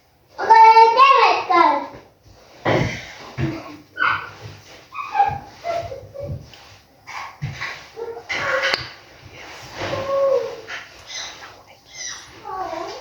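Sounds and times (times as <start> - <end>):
child calling and talking: 0.4 - 2.0.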